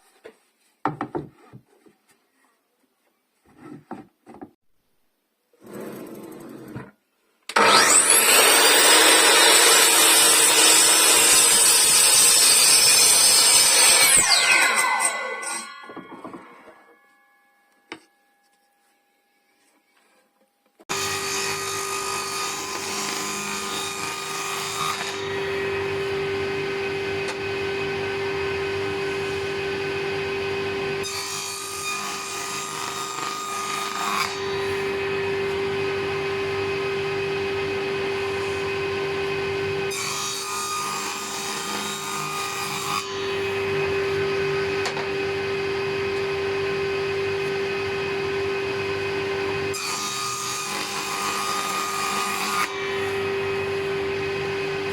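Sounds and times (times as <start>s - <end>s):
power tool cutting wood: 7.5s - 16.4s, 20.9s - 54.9s.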